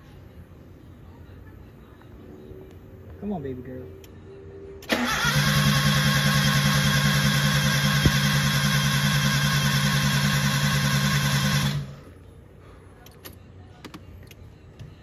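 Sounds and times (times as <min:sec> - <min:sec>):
starter motor cranking engine: 0:04.8 - 0:12.0.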